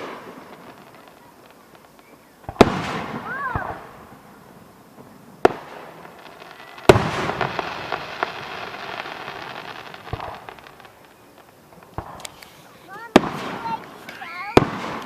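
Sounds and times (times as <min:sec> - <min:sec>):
firework bang: 0:00.0 - 0:01.3, 0:02.0 - 0:04.4, 0:05.0 - 0:11.0, 0:11.8 - 0:15.0
faint firework thump: 0:00.0 - 0:04.0, 0:10.0 - 0:15.0
firework crackling: 0:00.0 - 0:15.0
firework boom: 0:02.4 - 0:04.3.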